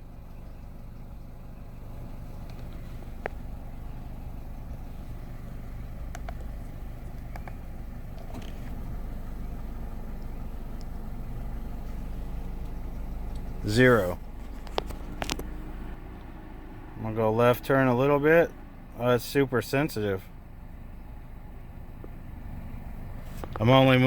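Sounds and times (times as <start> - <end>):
car engine idling: 0.0 - 24.0
faint clicks: 6.0 - 8.9.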